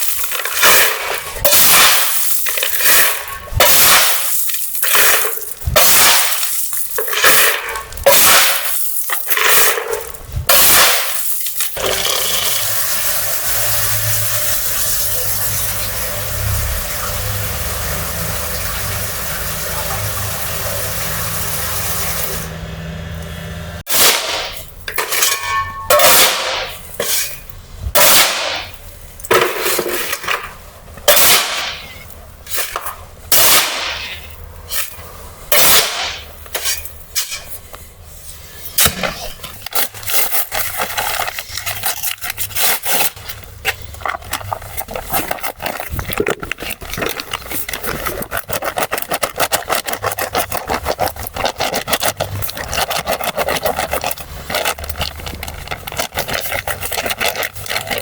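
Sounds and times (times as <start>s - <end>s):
sharp strokes and clanks: 0.0s - 58.0s
factory machinery rushing hum: 13.3s - 23.8s.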